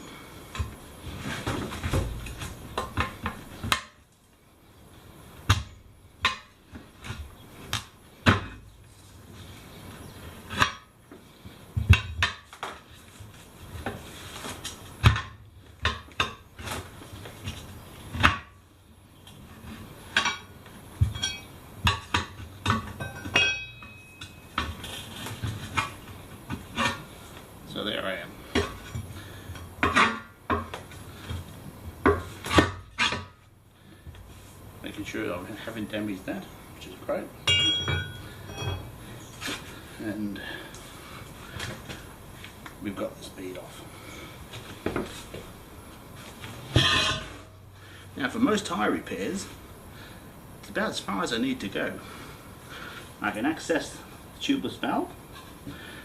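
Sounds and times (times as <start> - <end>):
tyre levers clinking on metal rim: 20.2 - 26.0, 37.4 - 39.5, 46.7 - 47.5.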